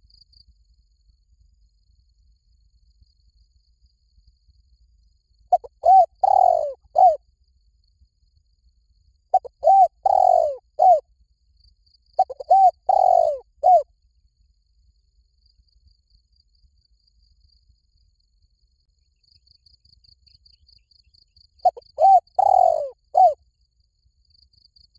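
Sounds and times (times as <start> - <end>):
dove cooing: 5.5 - 7.2, 9.3 - 11.0, 12.2 - 13.8, 21.6 - 23.4.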